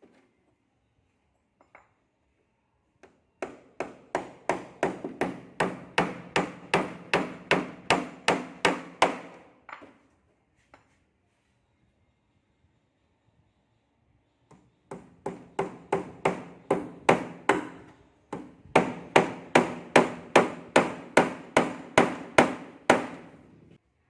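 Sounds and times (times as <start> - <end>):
hammer striking wood: 3.0 - 10.0, 14.5 - 23.5.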